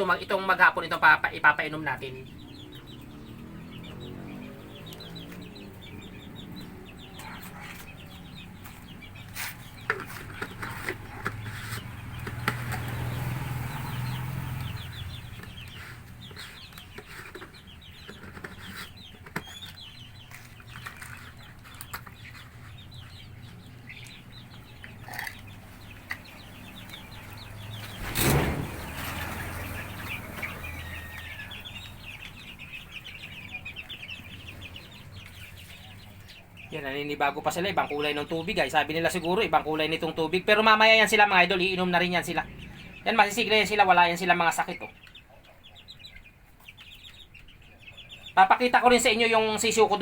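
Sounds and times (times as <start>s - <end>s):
chicks peeping: 0.0s - 50.0s
loud rustle or knock: 27.8s - 29.5s.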